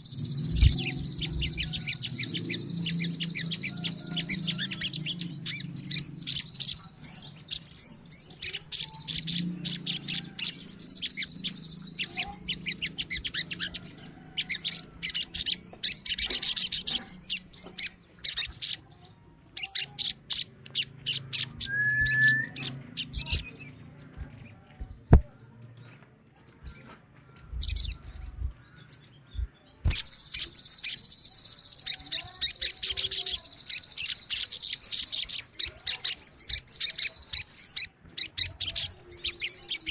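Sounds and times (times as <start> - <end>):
birds chirping in rapid trills: 0.0 - 39.9.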